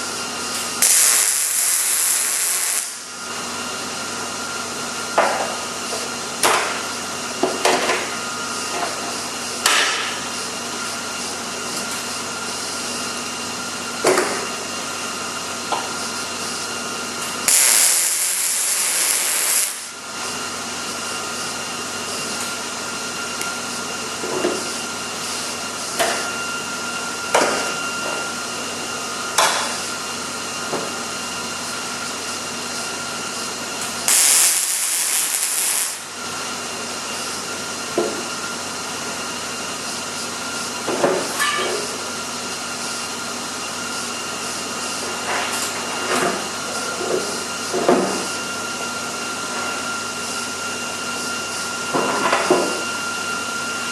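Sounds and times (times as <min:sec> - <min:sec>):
welder hissing and crackling: 0:00.6 - 0:03.1, 0:17.3 - 0:20.0, 0:33.8 - 0:36.2.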